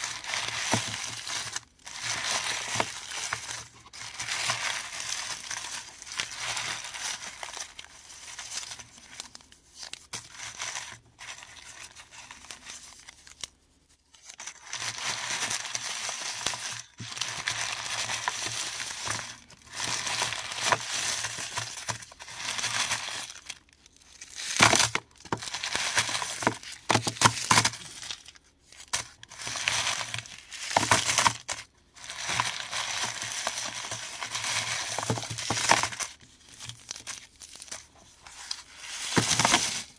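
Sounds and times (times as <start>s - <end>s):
mothballs crunching and crinkling: 0.0s - 13.5s, 14.2s - 39.9s.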